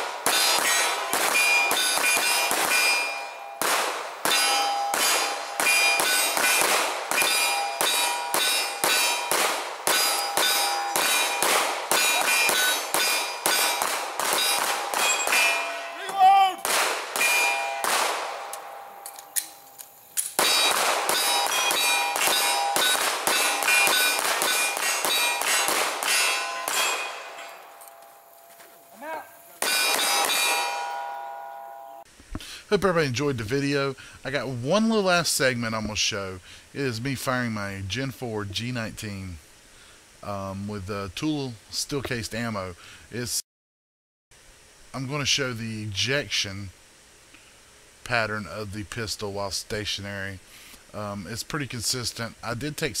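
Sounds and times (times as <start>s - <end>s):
rapid pistol fire: 0.0s - 15.6s, 16.6s - 18.5s, 20.4s - 27.3s, 29.6s - 30.7s
bullets clanging on steel targets: 0.0s - 28.1s, 29.6s - 31.6s.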